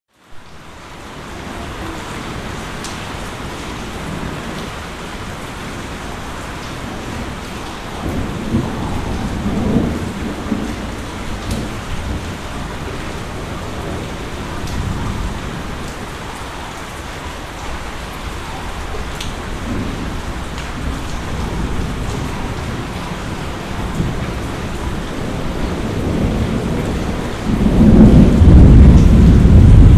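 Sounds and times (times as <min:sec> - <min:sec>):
steady rain falling: 0:00.1 - 0:29.9
raindrop ticks: 0:02.8 - 0:04.8, 0:07.4 - 0:13.2, 0:15.7 - 0:25.1, 0:28.0 - 0:29.9
low thunder rumbles: 0:04.0 - 0:16.2, 0:18.5 - 0:29.9.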